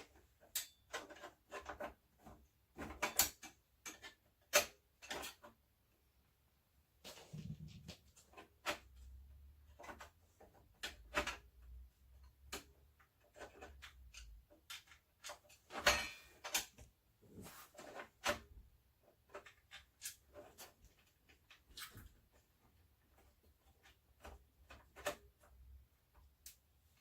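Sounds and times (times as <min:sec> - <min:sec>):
hands handling computer hardware: 0:12.2 - 0:27.0.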